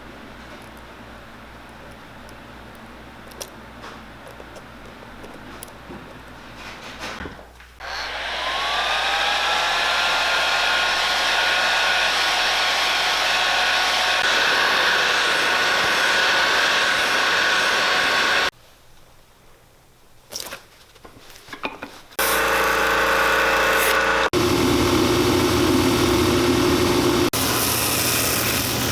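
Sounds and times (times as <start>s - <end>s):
finishing machine motor whining: 7.8s - 18.5s, 22.2s - 28.9s.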